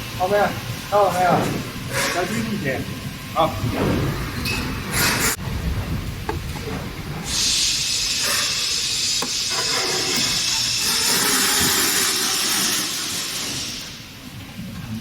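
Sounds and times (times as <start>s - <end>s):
high-pitched hiss: 7.3s - 14.0s.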